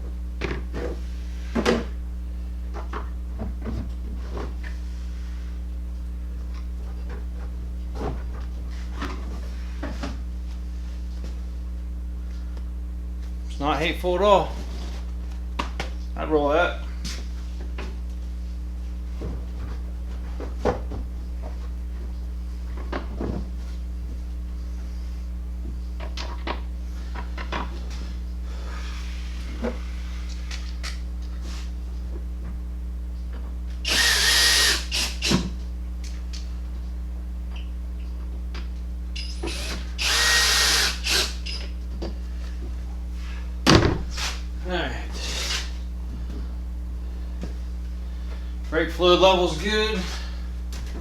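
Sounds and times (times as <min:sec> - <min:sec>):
steady low hum: 0:00.0 - 0:51.0
power drill running: 0:33.8 - 0:35.5, 0:39.2 - 0:41.6, 0:45.2 - 0:45.7.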